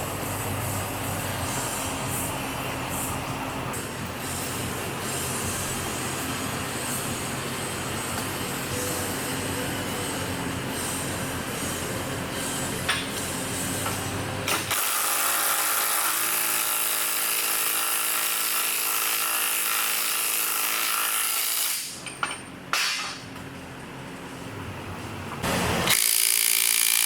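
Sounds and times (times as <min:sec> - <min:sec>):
power tool running: 0:14.5 - 0:22.0, 0:25.4 - 0:27.0.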